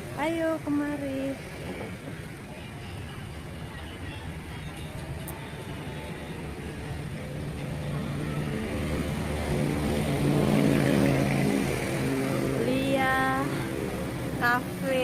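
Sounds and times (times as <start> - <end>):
vehicle engine droning: 4.5 - 14.3.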